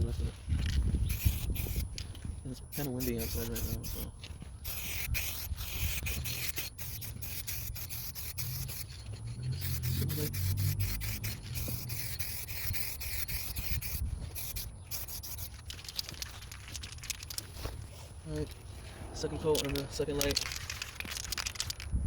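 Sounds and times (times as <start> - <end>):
wind rumbling on microphone: 0.0 - 7.9, 8.6 - 22.0
aerosol can spraying: 1.1 - 1.9, 2.7 - 15.6.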